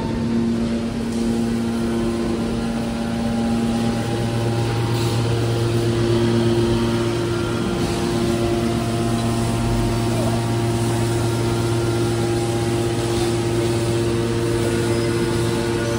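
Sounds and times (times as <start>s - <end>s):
machinery humming: 0.0s - 15.9s.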